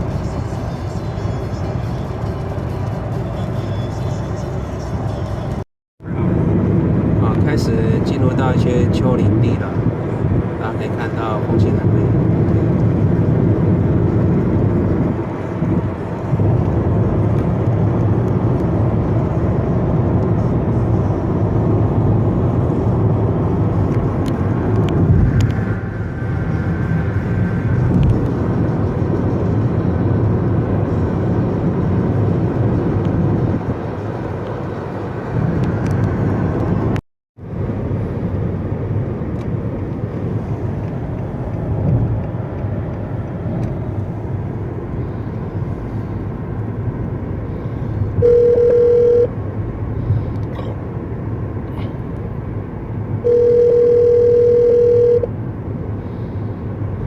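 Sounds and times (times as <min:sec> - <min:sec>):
car interior road noise: 0:00.0 - 0:57.0
telephone ringing tone: 0:48.2 - 0:49.3, 0:53.2 - 0:55.3.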